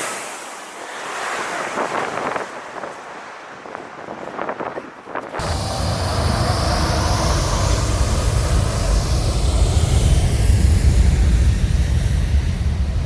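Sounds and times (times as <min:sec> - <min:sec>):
jet airliner passing overhead: 0:05.4 - 0:13.0.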